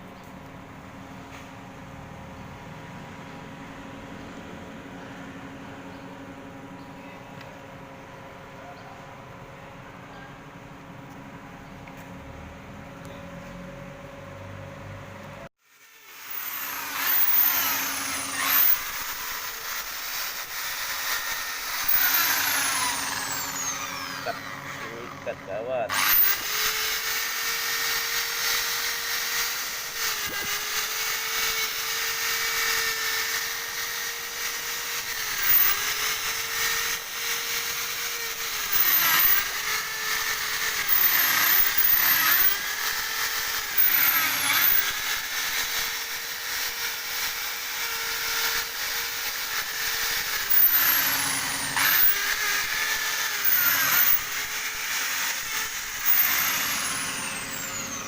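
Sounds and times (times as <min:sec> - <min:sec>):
electric drill whine: 0:15.6 - 0:58.0.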